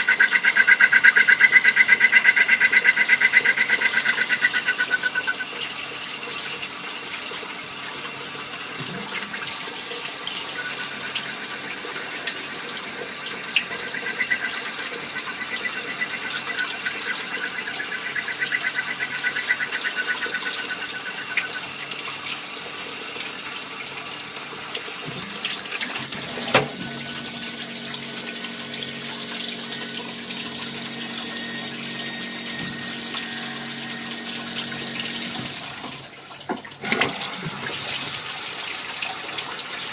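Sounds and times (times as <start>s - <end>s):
coolant splashing: 3.2s - 39.9s
high cutting whine: 26.5s - 35.6s.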